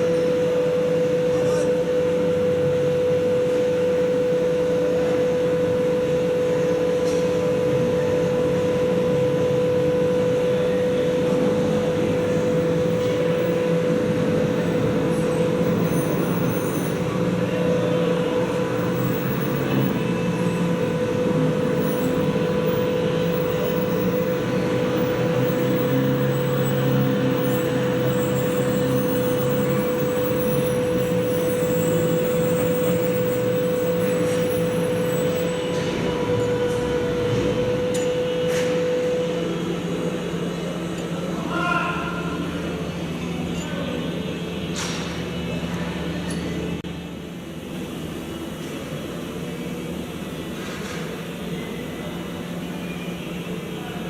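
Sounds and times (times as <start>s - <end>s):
constant whine: 0.0s - 41.5s
diesel locomotive engine running: 0.0s - 54.0s.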